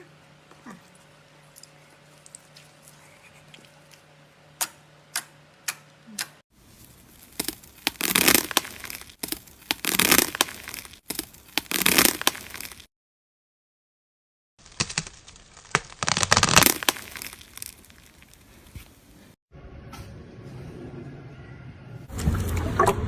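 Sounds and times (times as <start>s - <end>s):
slime crackling and popping: 6.8s - 12.9s, 14.6s - 18.7s.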